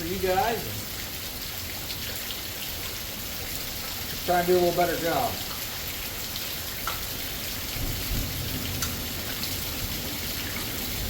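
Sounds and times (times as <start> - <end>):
heavy rain pouring: 0.0 - 11.0
low thunder rumble: 7.6 - 11.0.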